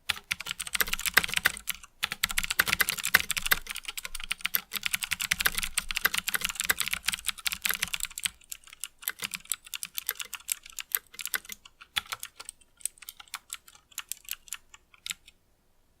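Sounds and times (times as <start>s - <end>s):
clicky mechanical keyboard typing: 0.1s - 15.4s.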